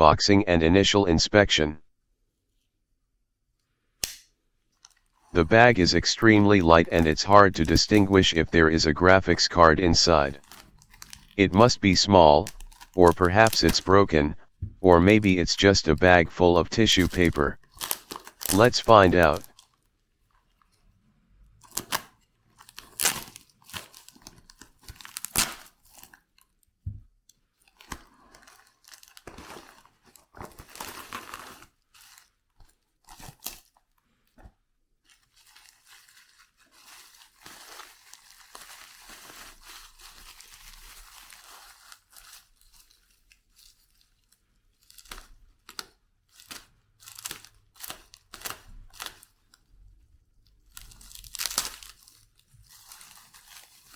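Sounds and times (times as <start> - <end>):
packaging rustling: 10.3 - 11.4, 17.1 - 18.6, 27.6 - 33.8, 35.0 - 49.6, 50.7 - 53.9
packaging tearing and crackling: 10.4 - 11.4, 12.5 - 13.8, 17.6 - 18.6, 21.6 - 26.3, 27.7 - 32.3, 35.2 - 49.6, 50.7 - 53.9.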